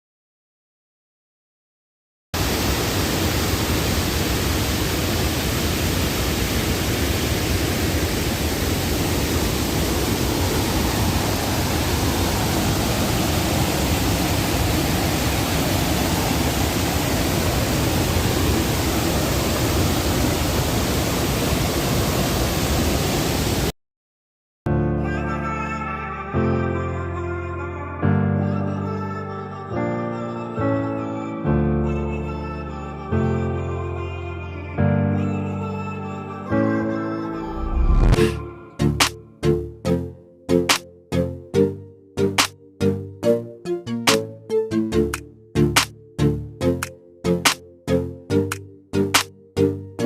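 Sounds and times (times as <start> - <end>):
waterfall rushing: 2.4 - 23.7
music: 24.7 - 50.0.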